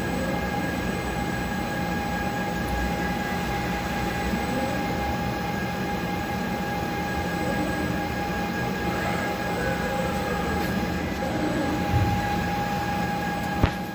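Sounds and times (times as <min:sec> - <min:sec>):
steady high whine: 0:00.0 - 0:13.9
machinery rumble: 0:04.4 - 0:13.9.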